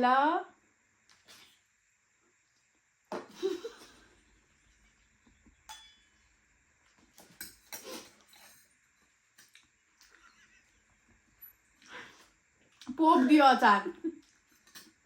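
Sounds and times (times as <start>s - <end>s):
dishes and utensils clicking: 5.7s - 6.2s, 14.6s - 15.0s.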